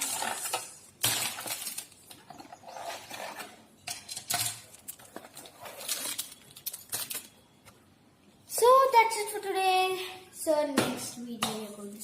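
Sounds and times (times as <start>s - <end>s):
plastic pieces rattling and clicking: 0.0s - 2.5s, 3.9s - 7.4s.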